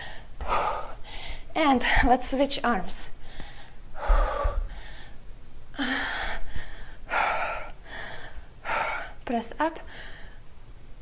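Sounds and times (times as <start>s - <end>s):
woman breathing hard: 0.0s - 2.1s, 3.2s - 9.2s, 9.8s - 10.5s.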